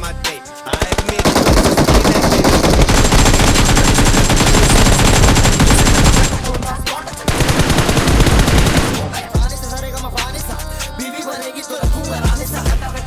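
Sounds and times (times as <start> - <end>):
hip hop music: 0.0 - 13.0
automatic gunfire sound effect: 0.7 - 9.4.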